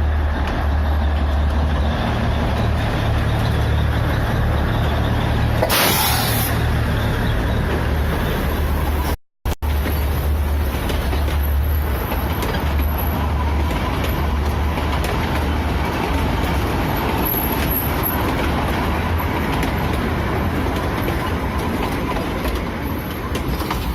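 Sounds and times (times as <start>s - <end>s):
train running: 0.0s - 23.9s.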